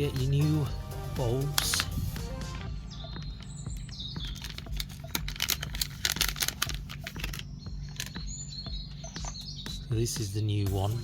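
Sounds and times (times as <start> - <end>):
packaging crinkling and tearing: 4.3 - 8.2.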